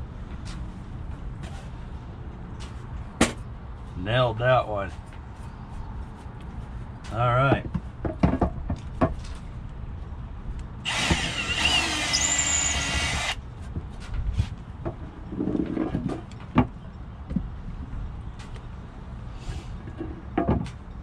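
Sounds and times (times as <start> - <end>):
electric drill whining: 10.9 - 13.4.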